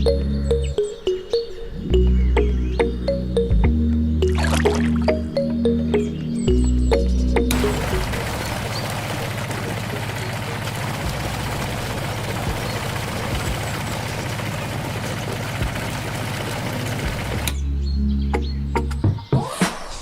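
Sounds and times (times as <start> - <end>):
motor humming: 7.5 - 17.6.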